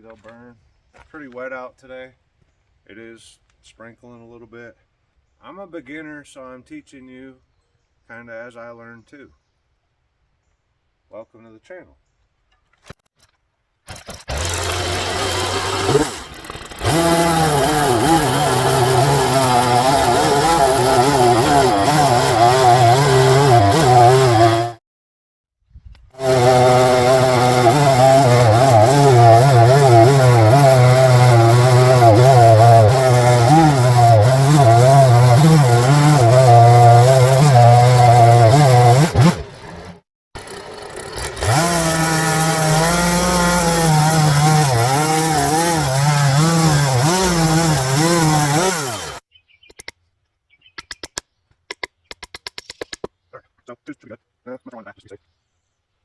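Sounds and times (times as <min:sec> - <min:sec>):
chainsaw cutting wood: 0:13.8 - 0:24.8, 0:26.2 - 0:49.2.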